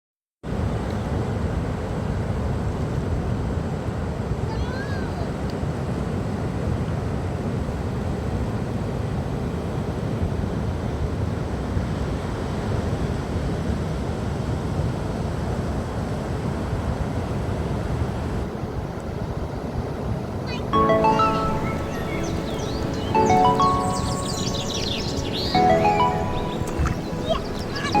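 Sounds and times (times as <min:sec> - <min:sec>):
ocean surf breaking: 0:20.5 - 0:28.0.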